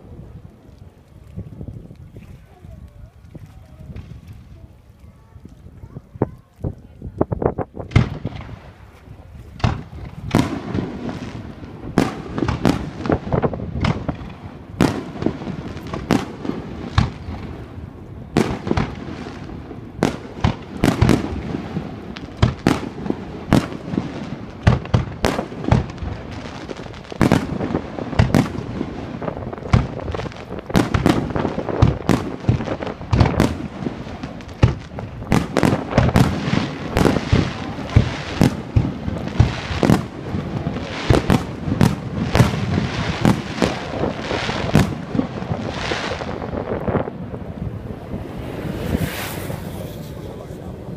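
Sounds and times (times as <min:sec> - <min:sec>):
fireworks bursting: 0:07.8 - 0:50.9.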